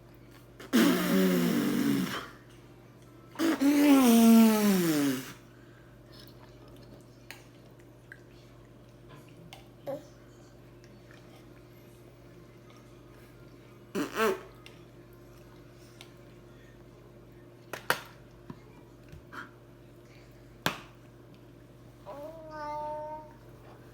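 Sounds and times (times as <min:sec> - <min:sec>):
man blowing a raspberry: 0:00.6 - 0:02.3, 0:03.4 - 0:05.4, 0:14.0 - 0:14.5.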